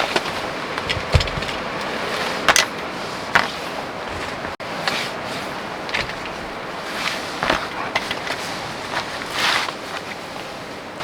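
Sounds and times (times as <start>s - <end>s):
heavy rain: 0.0s - 11.0s
wind: 0.0s - 11.0s.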